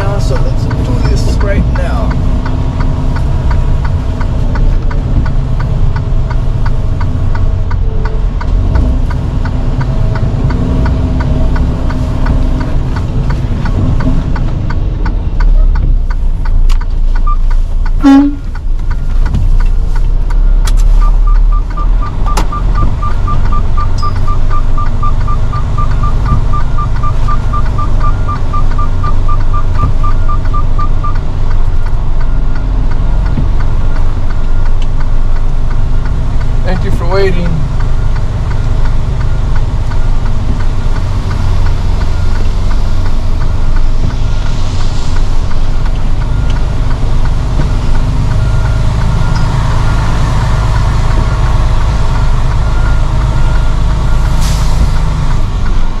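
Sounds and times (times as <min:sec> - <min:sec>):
backup alarm beeping: 0:17.2 - 0:18.6, 0:20.4 - 0:31.2
truck diesel engine reversing: 0:20.3 - 0:33.9, 0:37.4 - 0:56.0.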